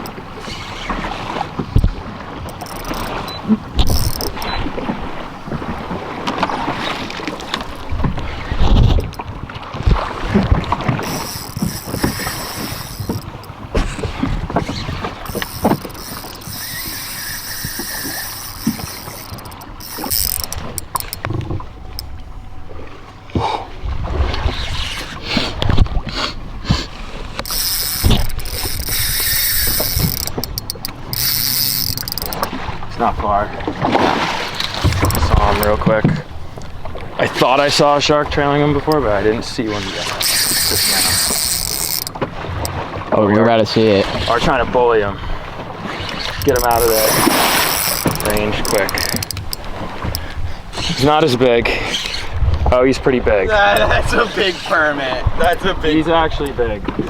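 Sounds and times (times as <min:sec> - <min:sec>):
water slapping boat hull: 0:00.0 - 0:57.0
wind buffeting microphone: 0:01.0 - 0:24.9, 0:44.1 - 0:57.0
gear knocking and clicking: 0:01.7 - 0:04.6, 0:07.2 - 0:09.3, 0:10.4 - 0:22.1, 0:27.4 - 0:32.6, 0:34.6 - 0:35.8, 0:40.0 - 0:42.8, 0:46.1 - 0:51.1.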